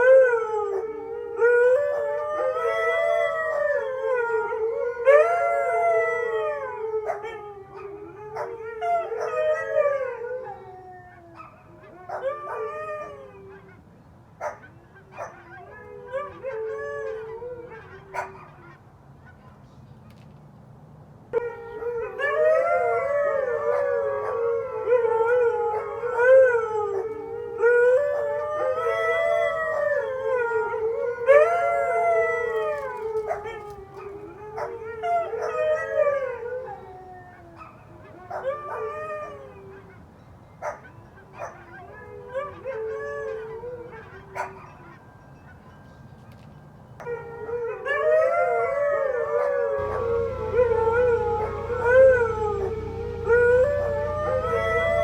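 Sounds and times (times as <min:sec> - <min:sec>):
huskies howling: 0:47.0 - 0:55.0.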